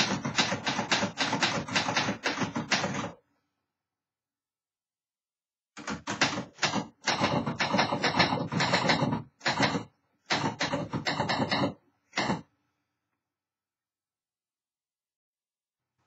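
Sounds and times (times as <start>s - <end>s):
manual typewriter key strikes: 0.0s - 3.2s, 5.8s - 12.4s.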